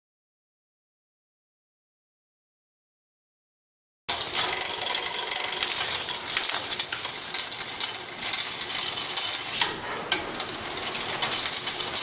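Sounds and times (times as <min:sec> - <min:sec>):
bicycle chain whirring and clicking: 0:04.1 - 0:09.7, 0:10.3 - 0:12.0.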